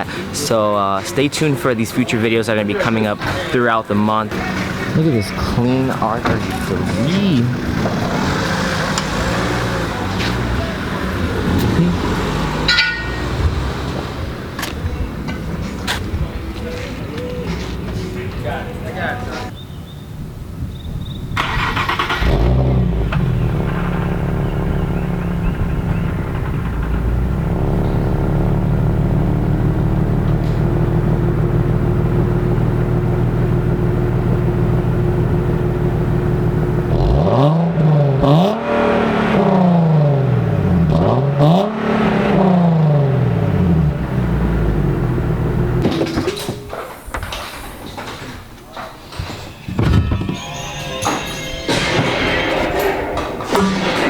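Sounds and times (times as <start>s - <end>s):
car engine revving: 0.0s - 16.7s, 21.4s - 45.9s
car engine starting and idling: 0.0s - 18.8s, 20.3s - 48.1s.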